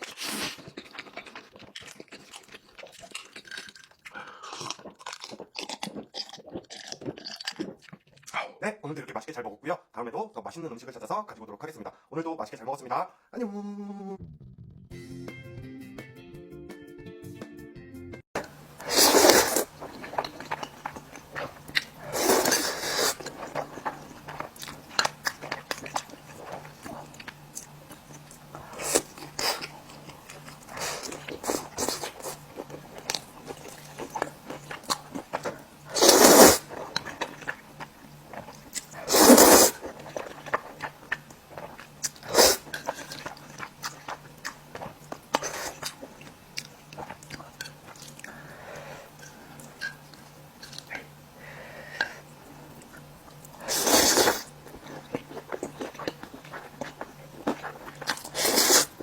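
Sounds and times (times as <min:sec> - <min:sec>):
person chewing crunchy food: 0:00.0 - 0:08.4, 0:18.4 - 0:59.0
faint steady hum: 0:18.4 - 0:59.0.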